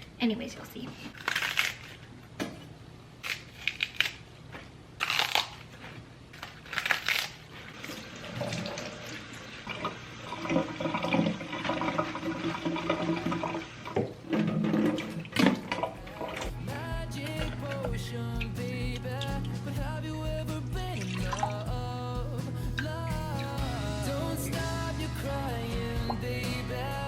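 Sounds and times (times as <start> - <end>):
tap water running: 7.8 - 16.6
background music: 16.0 - 27.0.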